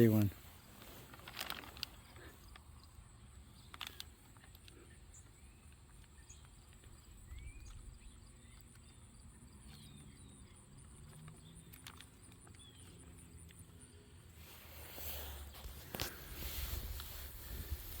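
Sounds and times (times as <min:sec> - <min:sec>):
small clicks: 0:10.9 - 0:13.7.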